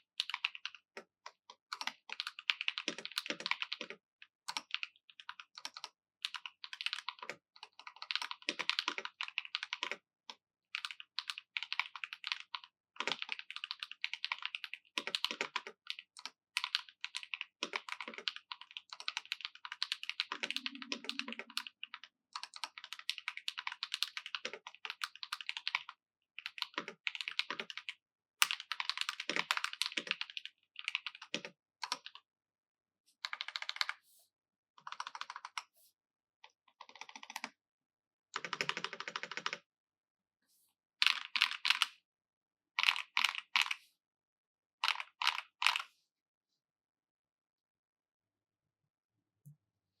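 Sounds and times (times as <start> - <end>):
mechanical keyboard typing: 1.7 - 10.0, 10.8 - 21.7, 22.4 - 32.2, 36.8 - 37.5, 38.4 - 39.6, 41.0 - 41.9, 42.8 - 43.8, 44.8 - 45.8.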